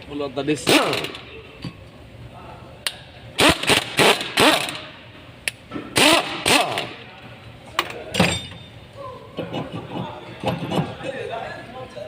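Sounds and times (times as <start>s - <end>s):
sharp metal knocks and clanks: 8.1s - 8.7s.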